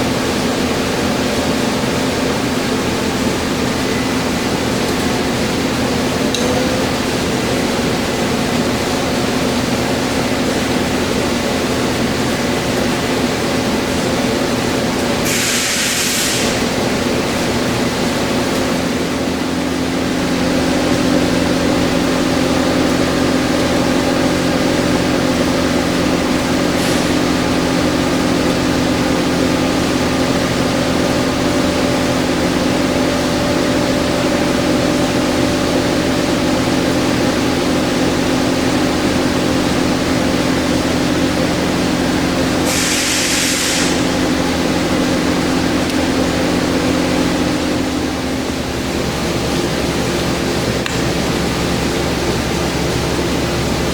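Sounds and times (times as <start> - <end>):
brief hiss: 15.3 - 16.6, 42.7 - 44.1.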